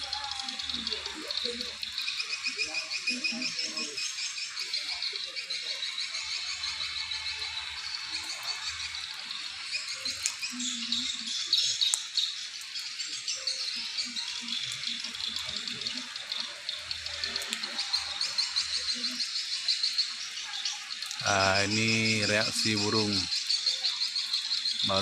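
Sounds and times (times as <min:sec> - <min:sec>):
swiftlets twittering: 0:00.0 - 0:25.0.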